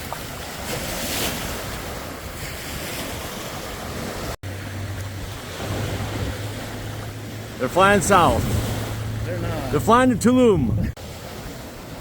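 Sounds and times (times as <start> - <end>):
ocean surf washing: 0.0 - 12.0
wind buffeting microphone: 8.2 - 12.0.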